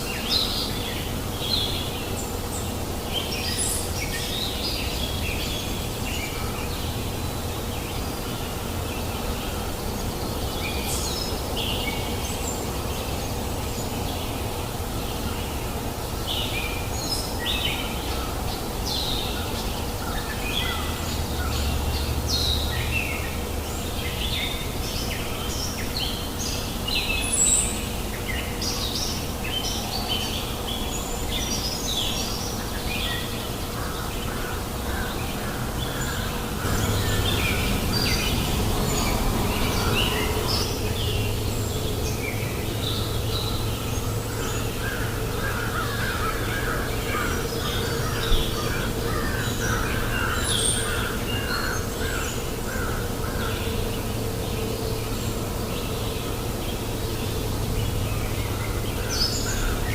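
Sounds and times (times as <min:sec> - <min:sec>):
birds chirping: 0:00.0 - 0:59.9
river rushing: 0:34.4 - 0:59.9.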